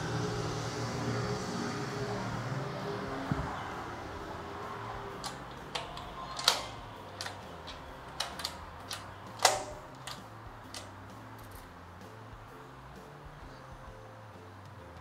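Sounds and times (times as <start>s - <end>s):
gate lock clicks and knocks: 5.2s - 11.7s.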